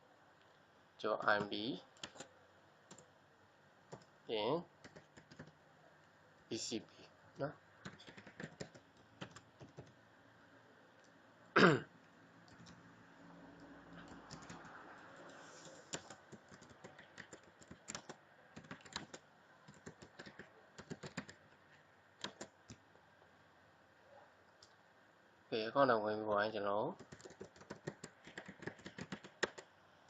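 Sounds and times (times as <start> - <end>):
typing on a keyboard: 1.3 - 2.3, 2.9 - 3.1, 3.9 - 4.1, 4.8 - 5.6, 7.8 - 10.0, 12.4 - 12.8, 13.6 - 21.4, 22.2 - 22.8, 27.0 - 29.7
person coughing: 11.5 - 11.9.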